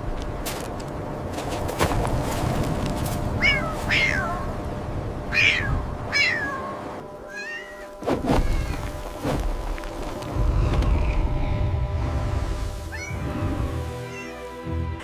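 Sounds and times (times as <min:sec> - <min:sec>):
kitten meowing: 0:05.4 - 0:06.6, 0:07.3 - 0:08.8
low rumble: 0:08.6 - 0:14.0.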